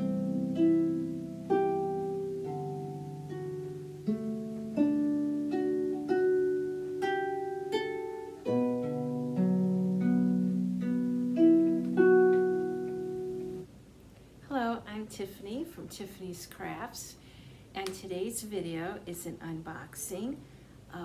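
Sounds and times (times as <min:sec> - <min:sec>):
harp melody: 0:00.0 - 0:13.7.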